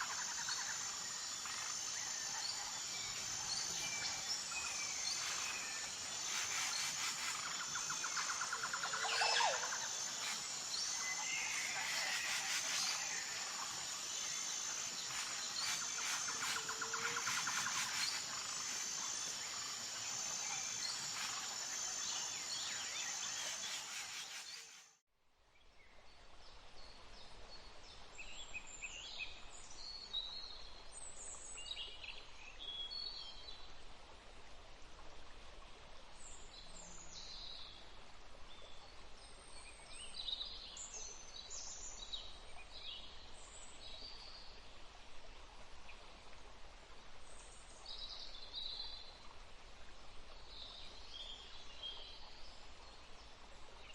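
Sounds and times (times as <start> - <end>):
pulsing insect trill: 0.0 - 24.8.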